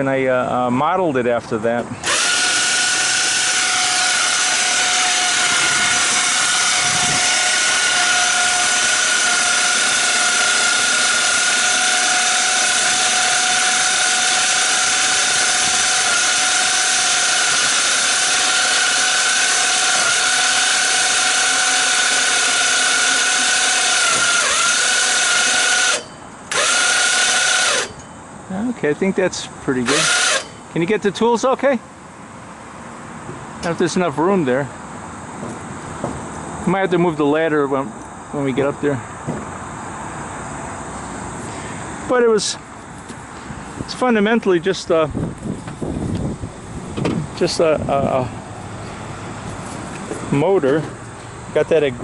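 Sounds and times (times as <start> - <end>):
electric motor whining: 2.0 - 28.0, 29.8 - 30.6.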